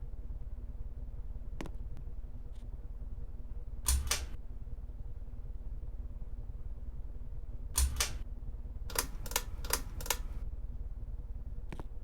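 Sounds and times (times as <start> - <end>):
sharp clicks: 3.9 - 4.4, 7.8 - 8.2, 8.9 - 10.4
ceiling fan humming: 8.9 - 10.4.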